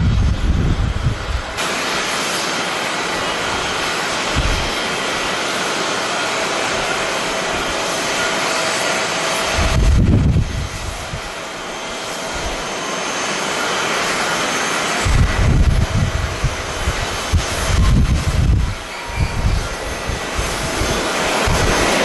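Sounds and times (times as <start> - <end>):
wind buffeting microphone: 0.0 - 1.6, 3.4 - 5.4, 9.2 - 12.7, 15.0 - 22.0
jet engines rushing: 0.0 - 22.0.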